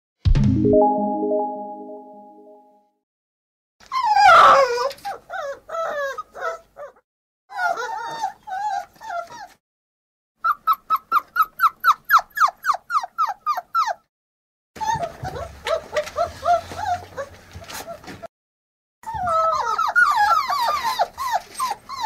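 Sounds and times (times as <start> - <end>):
dog whining and squealing: 3.8 - 9.6, 10.4 - 14.1, 14.8 - 18.0, 19.0 - 22.0.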